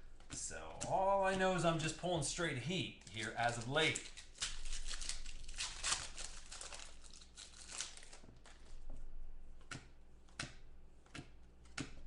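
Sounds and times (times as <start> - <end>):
wrapper crinkling and tearing: 3.1 - 8.7.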